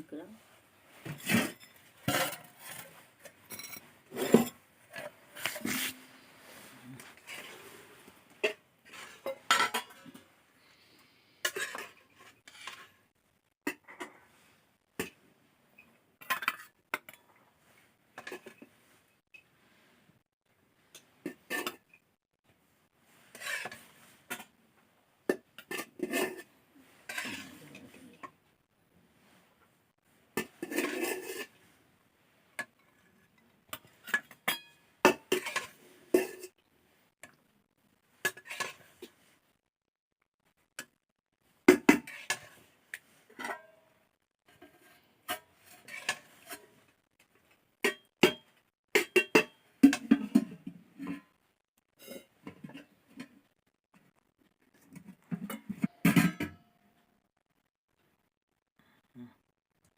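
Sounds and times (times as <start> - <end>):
dishes and utensils clinking: 1.0 - 6.0, 8.4 - 10.2, 11.4 - 12.9, 25.3 - 28.4, 30.4 - 31.6, 32.6 - 36.6, 43.3 - 43.7, 47.8 - 51.3, 54.9 - 56.7.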